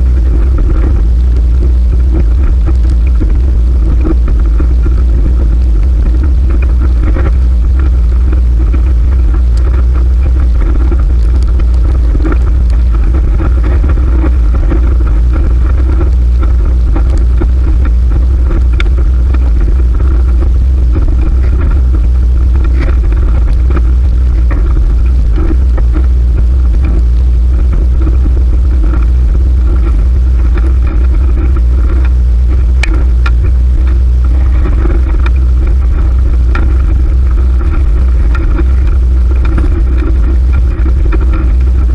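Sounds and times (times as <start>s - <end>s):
road noise: 0.0s - 41.9s
wind rumble on microphone: 0.0s - 41.9s
small clicks: 0.1s - 41.9s.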